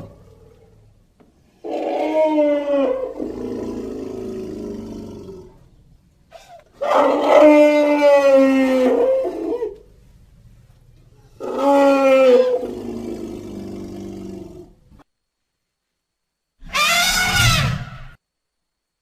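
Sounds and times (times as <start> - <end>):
elephant trumpeting: 6.3 - 9.8, 11.4 - 14.5, 16.6 - 18.1.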